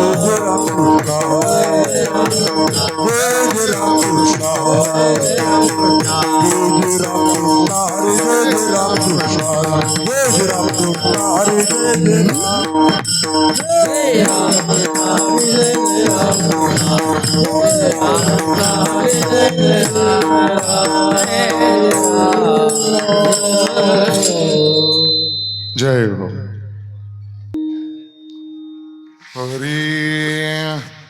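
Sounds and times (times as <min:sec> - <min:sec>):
drumming: 0:00.0 - 0:24.6.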